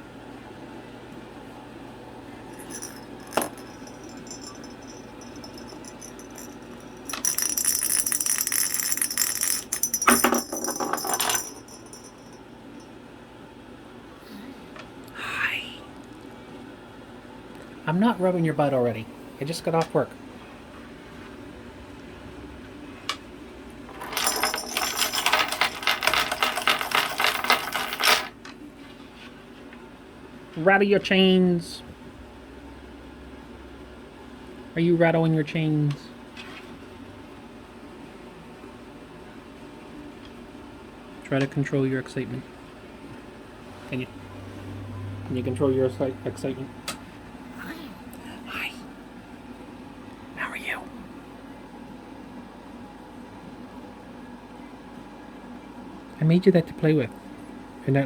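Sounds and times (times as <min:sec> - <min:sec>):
metal chain rattling: 0:02.6 - 0:12.4, 0:23.9 - 0:28.3.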